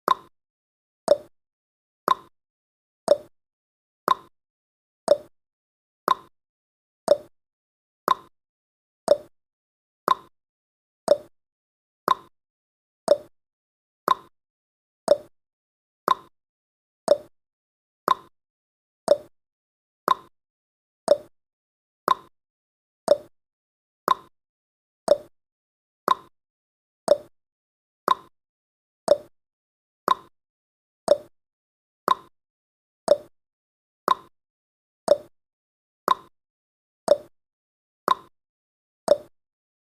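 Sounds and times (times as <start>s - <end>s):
clock-like ticking: 0.1s - 0.3s, 2.1s - 2.3s, 3.1s - 3.3s, 4.1s - 4.3s, 6.1s - 6.3s, 7.1s - 7.3s, 8.1s - 8.3s, 9.1s - 9.3s, 10.1s - 10.3s, 11.1s - 11.3s, 12.1s - 12.3s, 13.1s - 13.3s, 14.1s - 14.3s, 15.1s - 15.3s, 16.1s - 16.3s, 17.1s - 17.3s, 18.1s - 18.3s, 19.1s - 19.3s, 20.1s - 20.3s, 21.1s - 21.3s, 22.1s - 22.3s, 23.1s - 23.3s, 25.1s - 25.3s, 26.1s - 26.3s, 27.1s - 27.3s, 28.1s - 28.3s, 29.1s - 29.3s, 30.1s - 30.3s, 31.1s - 31.3s, 32.1s - 32.3s, 33.1s - 33.3s, 34.1s - 34.3s, 35.1s - 35.3s, 37.1s - 37.3s, 38.1s - 38.3s, 39.1s - 39.3s.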